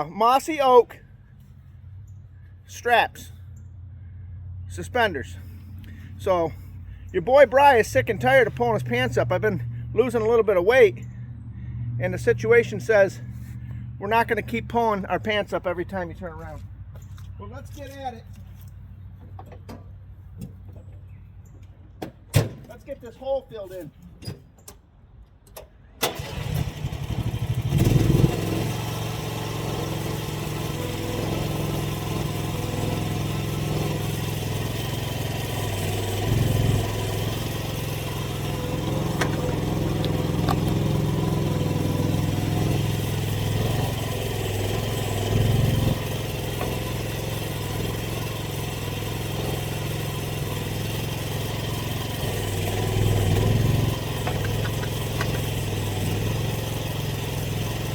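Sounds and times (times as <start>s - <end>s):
small engine cranking and running: 26.0s - 57.9s.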